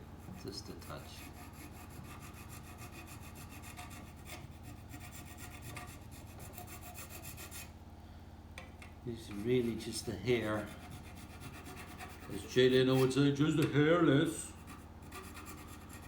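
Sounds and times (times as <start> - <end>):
hand file rasping on metal: 0.0 - 7.7, 9.2 - 13.2, 14.5 - 16.0.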